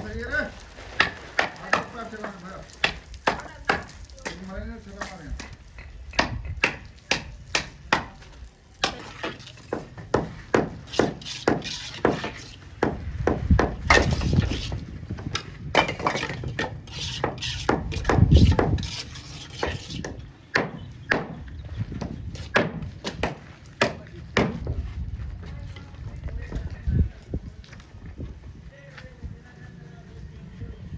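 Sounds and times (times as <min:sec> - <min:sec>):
tools knocking on bricks: 0:01.0 - 0:08.2, 0:08.8 - 0:14.6, 0:15.2 - 0:24.8
tool scraping: 0:08.8 - 0:13.0, 0:13.8 - 0:20.8.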